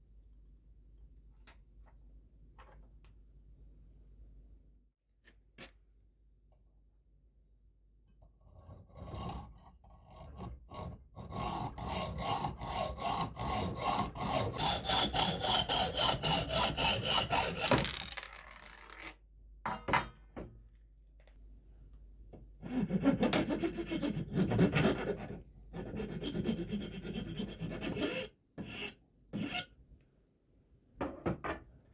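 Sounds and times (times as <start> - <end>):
hand tool filing metal: 8.6 - 17.7, 22.6 - 29.7.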